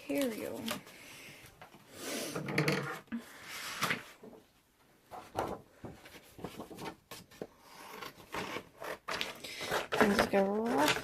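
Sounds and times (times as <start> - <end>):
paper rustling: 5.1 - 7.5.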